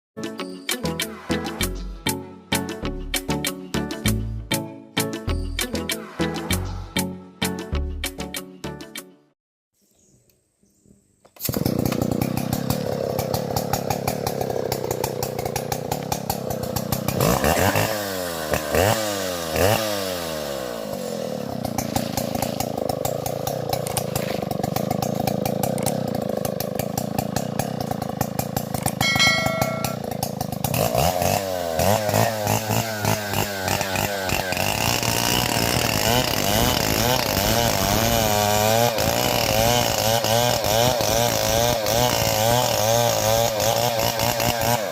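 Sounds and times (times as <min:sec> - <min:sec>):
chainsaw engine revving: 0:11.4 - 0:44.9.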